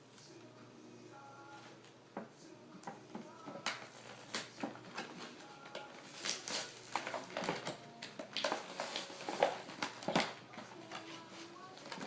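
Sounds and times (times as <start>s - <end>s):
packaging crinkling: 3.6s - 12.0s.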